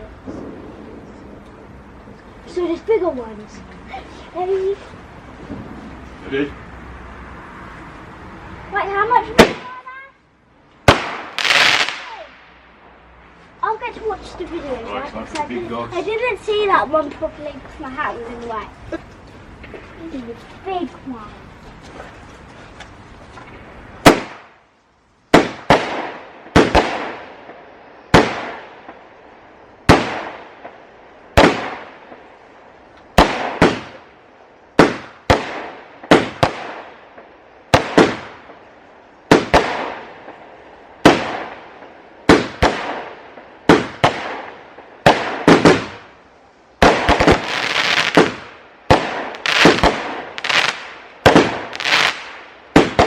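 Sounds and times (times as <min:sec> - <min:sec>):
fireworks bangs with crackling: 0:00.0 - 0:03.3, 0:08.7 - 0:09.9, 0:10.8 - 0:13.0, 0:23.3 - 0:24.7, 0:25.3 - 0:46.2, 0:46.8 - 0:53.0.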